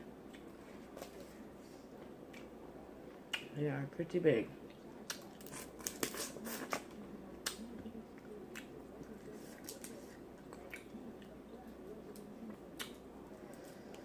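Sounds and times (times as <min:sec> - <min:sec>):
wet chewing and smacking: 0:04.6 - 0:13.1.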